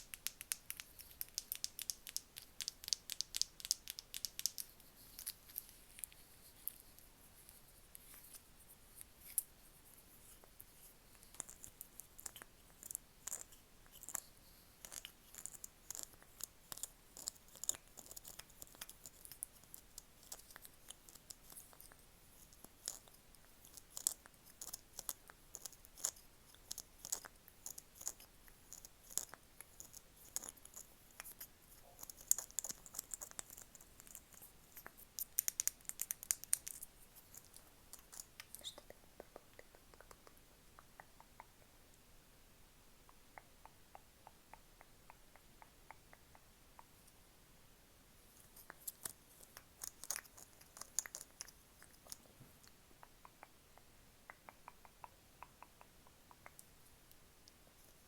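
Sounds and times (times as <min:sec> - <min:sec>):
light tapping and clicks: 0:00.0 - 0:09.5.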